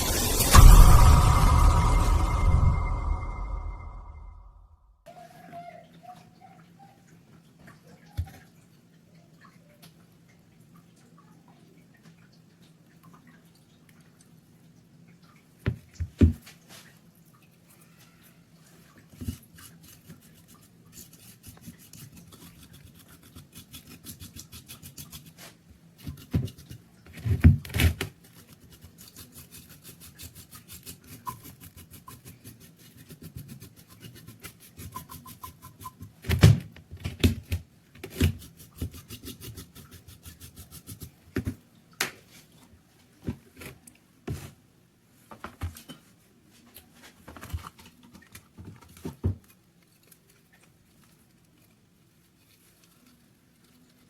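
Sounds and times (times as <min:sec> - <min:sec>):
rapid scraping strokes on metal: 0:28.5 - 0:36.0.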